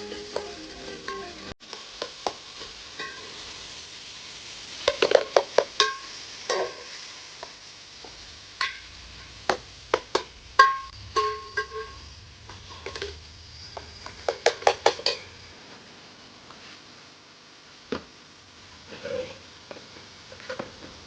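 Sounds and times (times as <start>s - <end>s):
faint sizzle: 0.0s - 21.0s.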